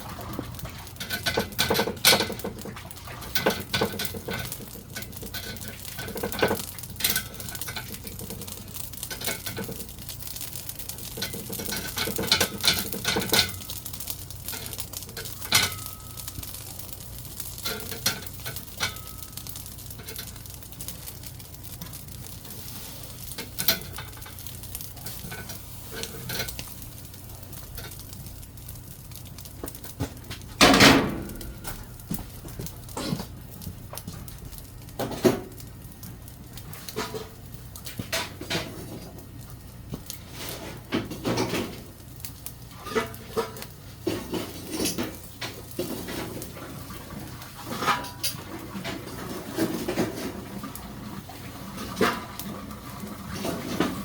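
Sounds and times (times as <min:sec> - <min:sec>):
utensils and dishes clinking: 0:00.0 - 0:09.9, 0:10.5 - 0:16.6, 0:17.4 - 0:20.5, 0:42.8 - 0:46.5, 0:47.6 - 0:50.4
fish sizzling on a grill: 0:00.0 - 0:54.0.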